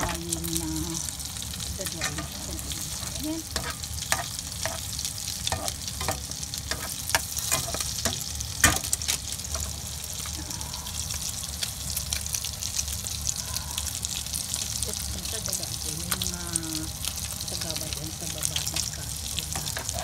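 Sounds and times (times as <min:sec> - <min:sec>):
omelette sizzling in pan: 0:00.0 - 0:20.0
utensil clicking and scraping pan: 0:01.8 - 0:09.7.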